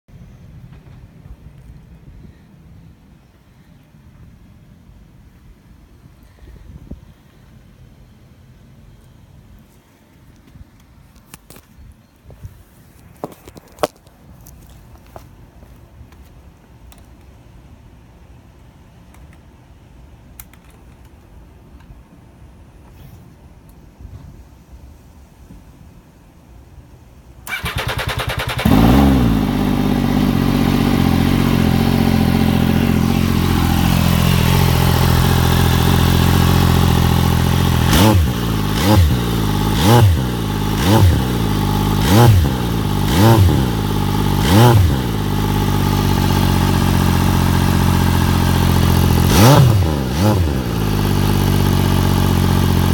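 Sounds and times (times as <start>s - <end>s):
motorcycle engine starter cranking: 27.4s - 29.3s
motorcycle engine idling and revving: 27.5s - 52.9s.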